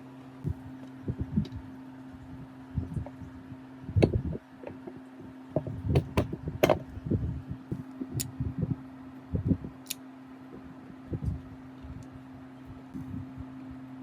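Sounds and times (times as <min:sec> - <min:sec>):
steady low hum: 0:00.0 - 0:14.0
knocks and clicks of tools: 0:04.0 - 0:05.0, 0:05.6 - 0:06.9.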